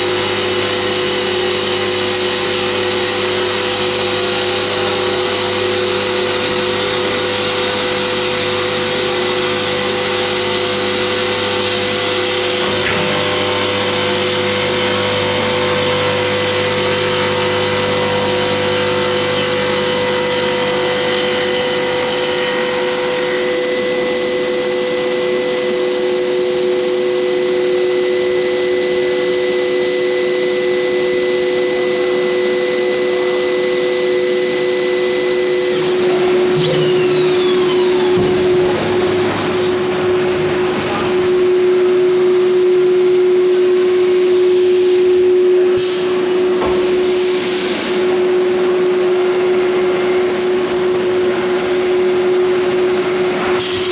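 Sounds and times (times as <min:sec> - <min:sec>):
polishing machine motor drone: 0:31.7 - 0:45.8.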